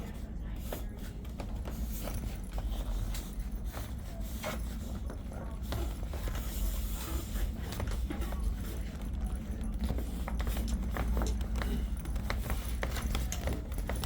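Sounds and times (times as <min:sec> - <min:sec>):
light clicks and knocks: 0:07.4 - 0:14.0.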